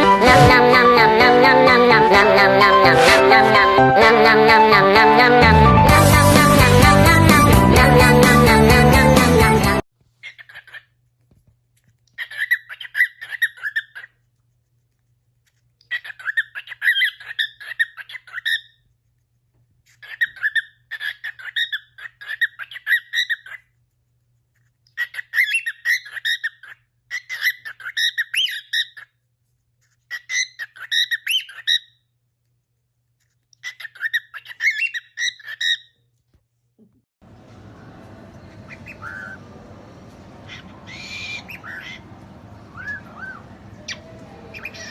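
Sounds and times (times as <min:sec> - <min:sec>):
cockatiel chirping: 0:10.2 - 0:11.0, 0:12.2 - 0:14.2, 0:15.8 - 0:18.8, 0:19.9 - 0:23.7, 0:24.9 - 0:29.2, 0:30.1 - 0:32.0, 0:33.6 - 0:36.0, 0:37.8 - 0:39.5, 0:40.1 - 0:44.9.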